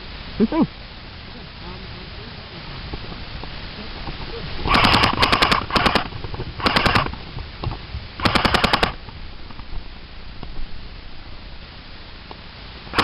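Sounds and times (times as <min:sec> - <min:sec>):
airsoft gun rapid clicks: 0:04.7 - 0:07.2, 0:08.2 - 0:09.0.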